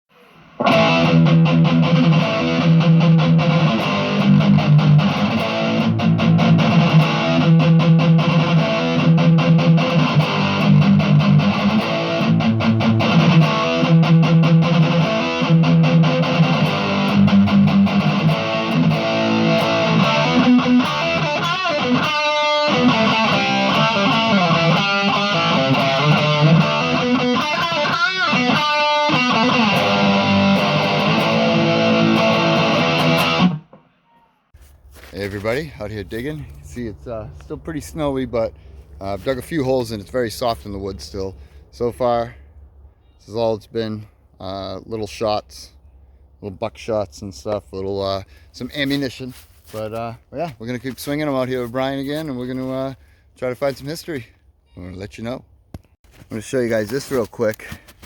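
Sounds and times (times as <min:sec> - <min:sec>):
electric guitar music with beat: 0:00.5 - 0:33.9.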